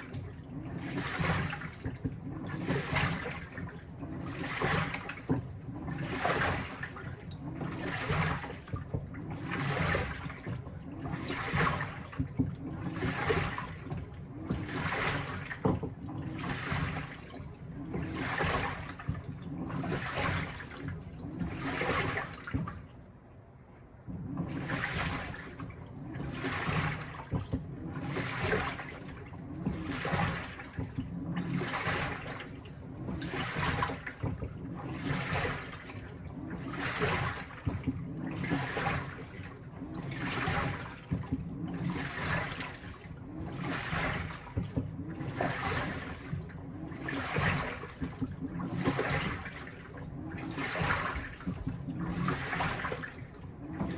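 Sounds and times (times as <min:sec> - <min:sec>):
washing machine swishing water: 0:00.0 - 0:53.9
low motor hum: 0:24.0 - 0:53.9.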